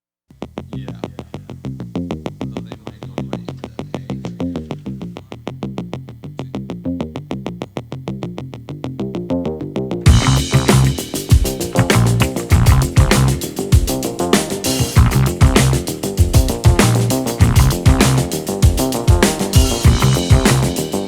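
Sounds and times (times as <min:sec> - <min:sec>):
electronic beat: 0:10.1 - 0:21.0
synthesizer notes: 0:10.1 - 0:21.0.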